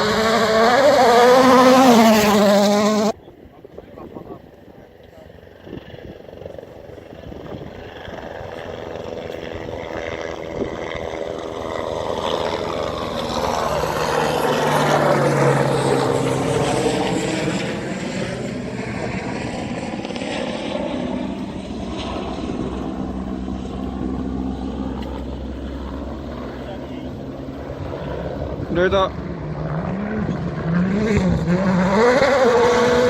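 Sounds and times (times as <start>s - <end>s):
aircraft passing overhead: 0.0s - 33.0s.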